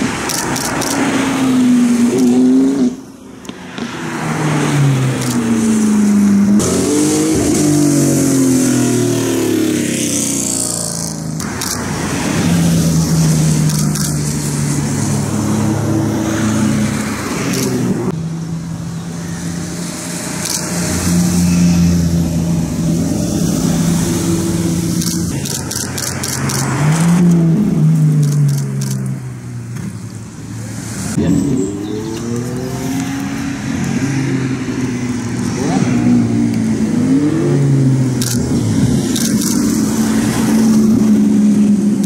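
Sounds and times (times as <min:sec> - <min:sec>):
car engines at low revs: 0:00.0 - 0:42.0
engine rev: 0:03.7 - 0:18.2, 0:19.2 - 0:29.2.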